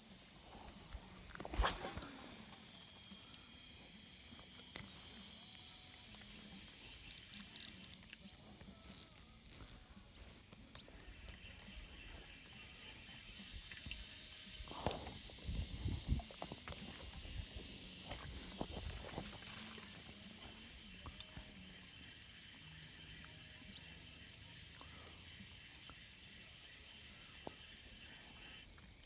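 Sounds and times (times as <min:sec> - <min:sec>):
insects chirping: 0:00.0 - 0:29.0
short high hissing bursts: 0:01.0 - 0:08.0.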